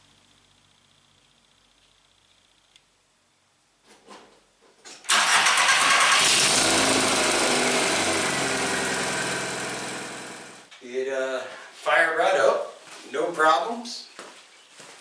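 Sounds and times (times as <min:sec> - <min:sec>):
car engine starting and idling: 0:05.1 - 0:10.7.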